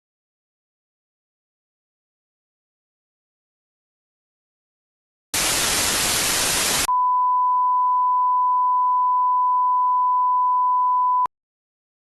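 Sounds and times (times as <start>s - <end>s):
broadcast static: 5.4s - 6.9s
test-tone beep: 6.9s - 11.3s.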